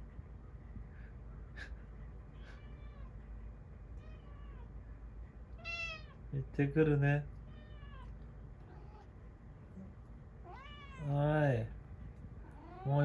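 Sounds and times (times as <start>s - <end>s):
cat meowing softly: 2.4s - 3.2s, 4.0s - 4.8s, 5.6s - 6.3s, 7.4s - 9.2s, 10.4s - 11.2s, 12.4s - 13.0s.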